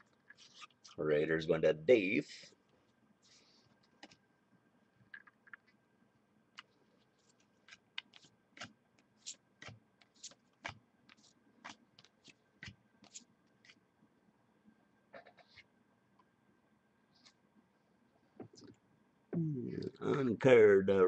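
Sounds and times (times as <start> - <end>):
trading cards clicking and scraping: 6.6 - 13.8.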